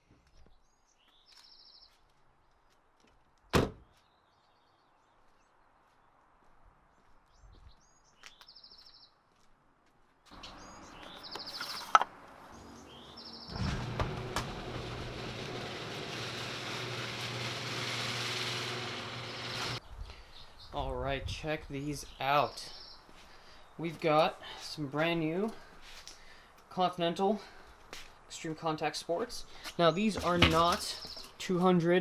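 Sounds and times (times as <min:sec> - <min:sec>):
loud sharp thump: 0:03.6 - 0:03.8
bird singing with trill: 0:10.4 - 0:11.9, 0:12.5 - 0:13.5
low hum: 0:12.5 - 0:19.8.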